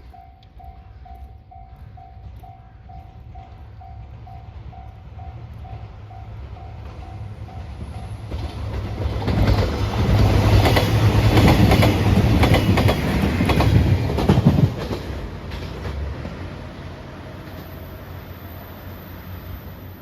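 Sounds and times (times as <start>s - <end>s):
level crossing warning bell: 0.0s - 8.3s
train wheels clattering over rails: 6.4s - 18.0s.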